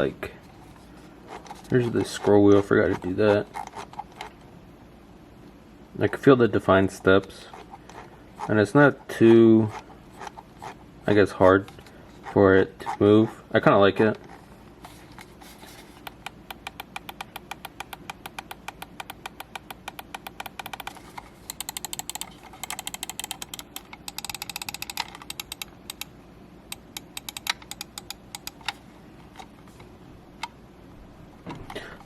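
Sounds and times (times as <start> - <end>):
mouse scroll wheel ticking: 16.0 - 26.1, 26.7 - 28.8.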